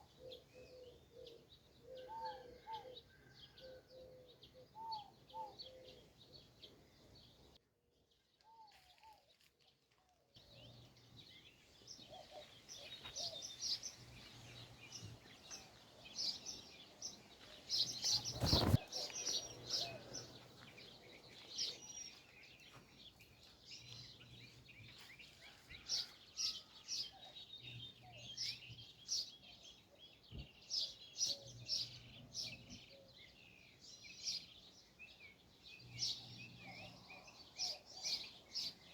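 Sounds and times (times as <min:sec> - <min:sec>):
birds chirping: 0:10.4 - 0:38.9.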